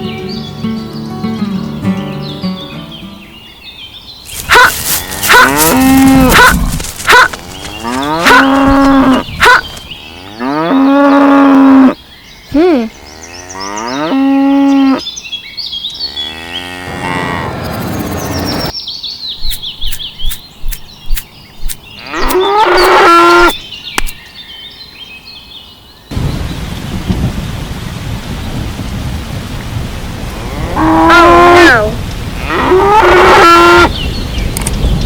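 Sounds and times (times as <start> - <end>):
cattle mooing: 4.4 - 12.0, 16.0 - 17.6, 22.0 - 23.6, 30.3 - 33.9
sharp clicks: 19.4 - 22.4, 23.5 - 24.2
low thunder rumble: 26.1 - 30.8
rain hiss: 26.1 - 31.0, 31.8 - 32.5.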